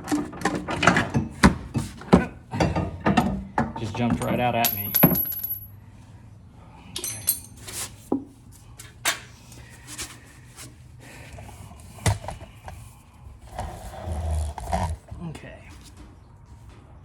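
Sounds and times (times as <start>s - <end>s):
metal tools clinking: 4.0s - 5.7s, 7.0s - 7.8s.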